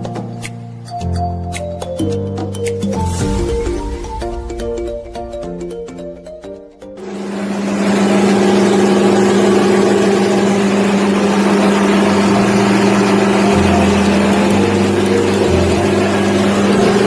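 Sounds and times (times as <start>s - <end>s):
chopper machine humming loudly: 7.0s - 17.0s.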